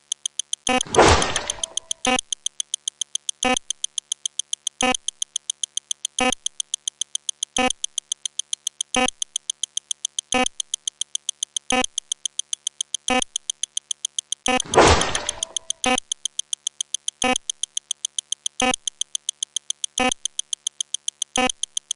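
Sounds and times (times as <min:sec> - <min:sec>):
rapid electronic ticks: 0:00.0 - 0:21.9
stronger click: 0:00.7 - 0:02.6, 0:14.4 - 0:16.3.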